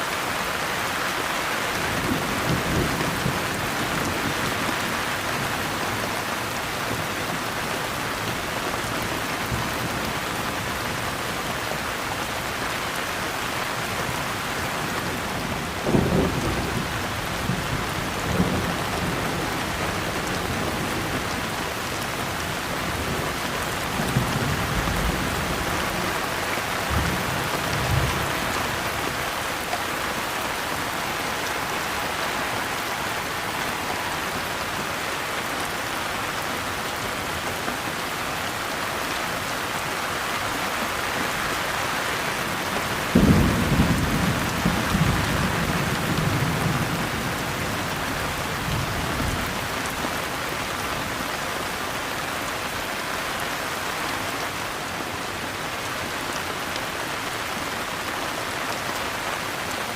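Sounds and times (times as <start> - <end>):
steady rain hissing: 0.0 - 59.9
low rumbles of thunder: 43.1 - 49.5.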